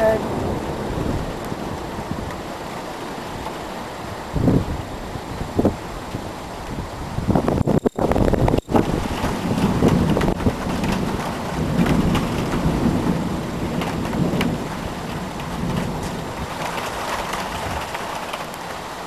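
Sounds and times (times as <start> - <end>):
steady rain: 0.0 - 19.0
thunder rumbling: 0.0 - 19.0.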